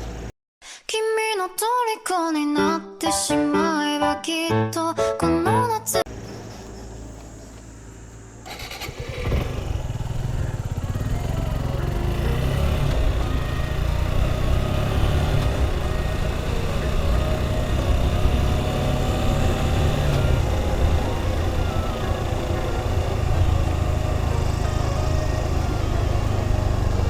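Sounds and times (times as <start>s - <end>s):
motorcycle engine running: 6.1s - 27.0s
road and wind noise: 6.1s - 27.0s.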